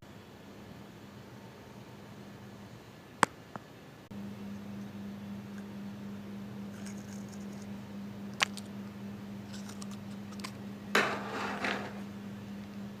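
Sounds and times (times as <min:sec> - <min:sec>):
steady low hum: 0:00.0 - 0:13.0
rustling scrape: 0:11.0 - 0:12.0.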